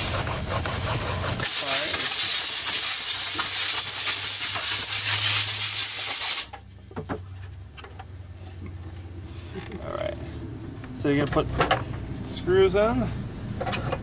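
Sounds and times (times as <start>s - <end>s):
pressurised jet hissing: 1.4s - 6.5s.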